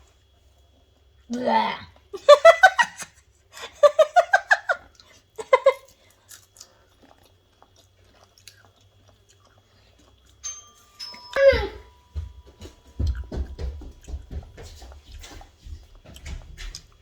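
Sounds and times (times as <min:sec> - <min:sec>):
people chewing and eating: 0:00.0 - 0:02.2, 0:02.9 - 0:17.0
people laughing: 0:02.2 - 0:04.8
person speaking: 0:11.3 - 0:11.9.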